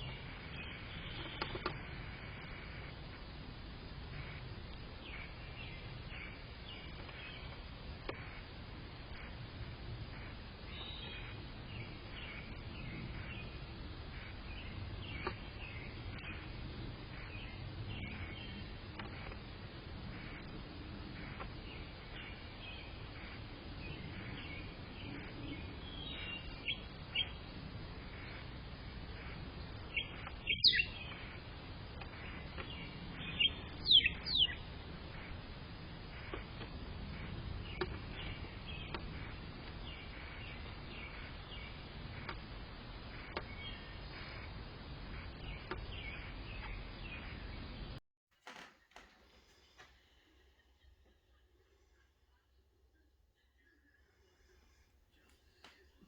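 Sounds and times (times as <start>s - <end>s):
low background rumble: 0.0s - 48.0s
small birds chirping: 0.0s - 48.0s, 49.5s - 56.0s
bird chirps sweeping downward: 30.0s - 31.1s, 33.2s - 34.6s.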